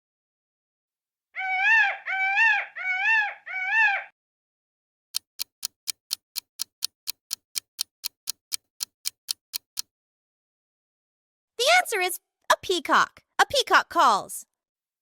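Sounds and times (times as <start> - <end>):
peacock calling: 1.4 - 4.1
clock ticking: 5.1 - 9.9.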